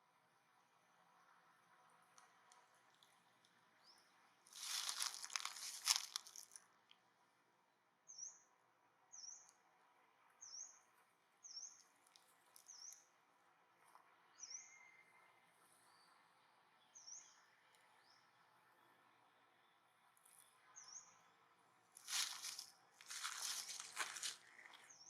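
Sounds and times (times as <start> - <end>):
rustling and crunching: 4.5 - 6.6, 22.0 - 24.9.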